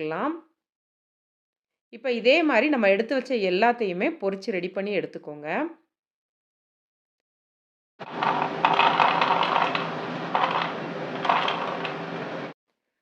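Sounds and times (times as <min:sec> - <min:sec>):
fried snack pieces clattering into dish: 0:08.1 - 0:09.8.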